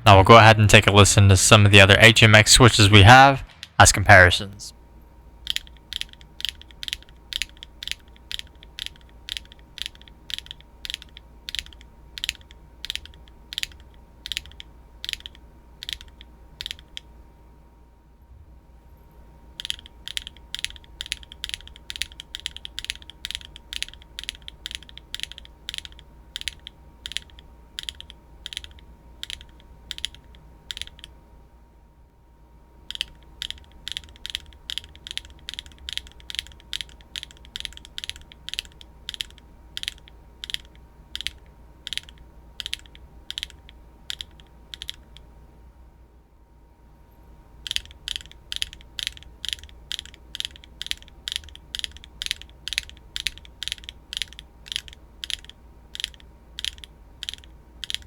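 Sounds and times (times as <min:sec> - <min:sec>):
mechanical keyboard key clacks: 0:05.5 - 0:17.0, 0:19.6 - 0:31.1, 0:32.9 - 0:45.2, 0:47.7 - 0:58.0.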